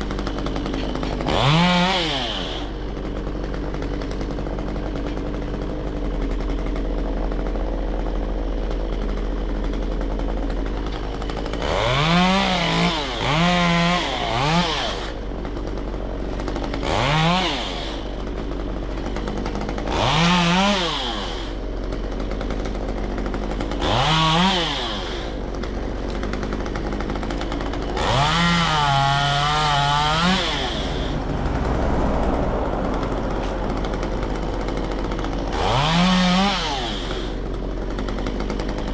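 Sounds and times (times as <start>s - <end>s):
chainsaw idling and revving: 0.0s - 38.9s
steady low drone: 28.6s - 36.0s.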